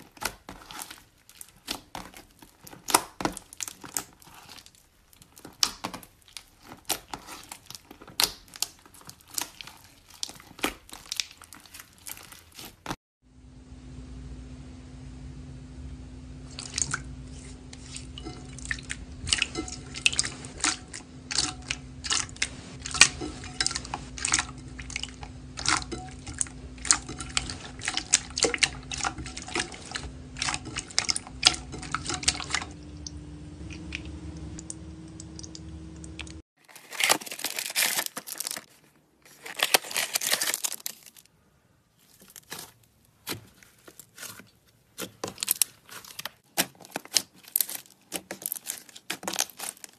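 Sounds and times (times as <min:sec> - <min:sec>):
slime crackling bursts: 0:00.0 - 0:13.0, 0:42.3 - 0:49.9.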